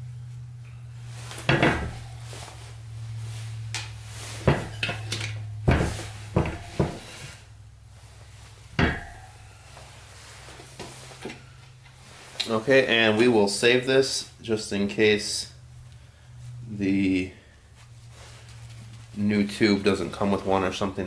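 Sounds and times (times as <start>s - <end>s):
steady low hum: 0.0s - 21.0s
metal tools clanking: 4.4s - 7.3s, 8.8s - 9.9s.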